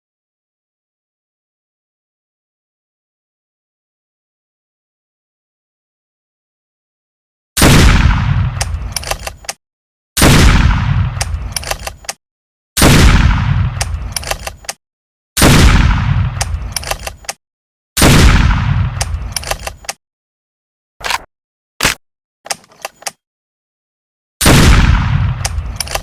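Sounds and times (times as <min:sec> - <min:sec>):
rifle shots booming: 0:07.6 - 0:08.9, 0:10.2 - 0:11.5, 0:12.8 - 0:14.1, 0:15.4 - 0:16.8, 0:18.0 - 0:19.3, 0:24.4 - 0:26.0
quick clicks: 0:08.6 - 0:09.6, 0:11.2 - 0:12.2, 0:13.8 - 0:14.8, 0:16.4 - 0:17.4, 0:19.0 - 0:20.0, 0:21.0 - 0:23.2, 0:25.4 - 0:26.0.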